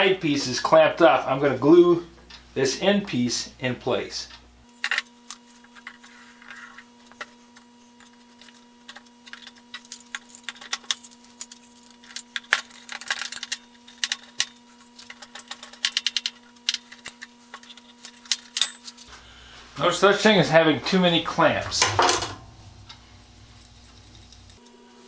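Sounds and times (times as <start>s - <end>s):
faint steady hum: 0.0s - 25.0s
clamps clicking and rattling: 8.4s - 19.1s.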